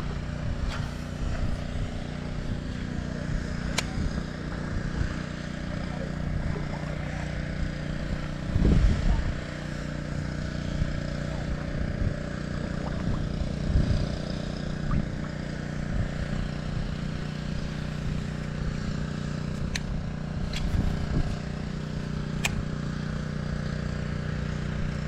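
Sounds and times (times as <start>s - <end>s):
low mechanical hum: 0.0s - 25.0s
sharp clicks: 22.4s - 22.7s.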